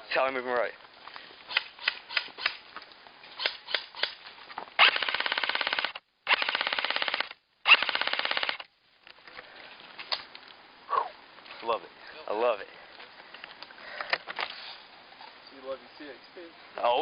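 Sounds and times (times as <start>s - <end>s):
airsoft gun full-auto bursts: 4.8s - 8.6s.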